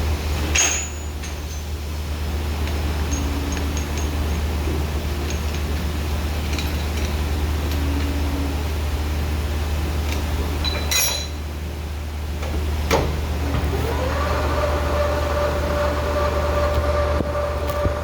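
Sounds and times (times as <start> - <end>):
lathe humming: 13.2 - 18.0.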